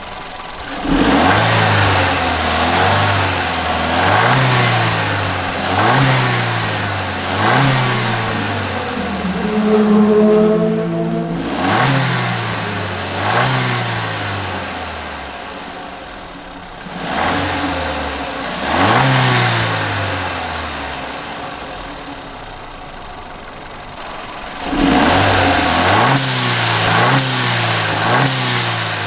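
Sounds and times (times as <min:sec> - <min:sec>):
turbocharged car engine revving: 0:00.0 - 0:22.2, 0:24.0 - 0:29.0.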